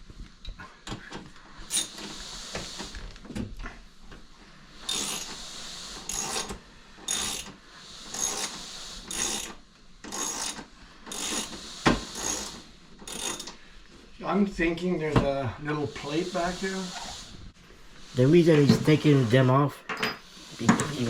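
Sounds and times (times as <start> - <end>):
ratchet wrench clicking: 4.8 - 5.4, 6.1 - 6.5, 7.1 - 13.6.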